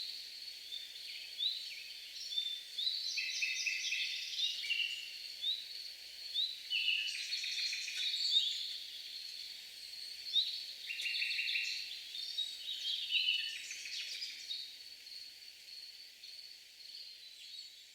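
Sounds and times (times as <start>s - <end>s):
songbirds singing: 0.6s - 14.8s.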